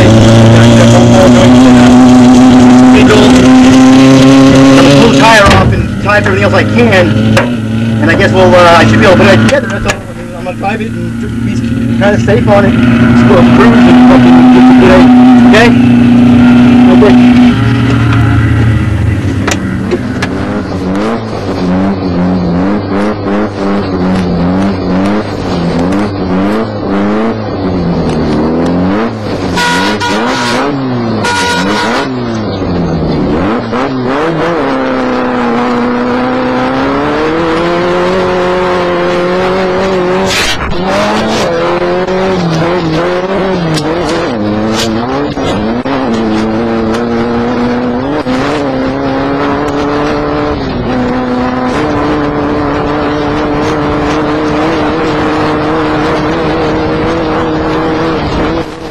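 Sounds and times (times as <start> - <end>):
race car engine revving: 0.0 - 58.9
short high beeps: 29.6 - 32.3.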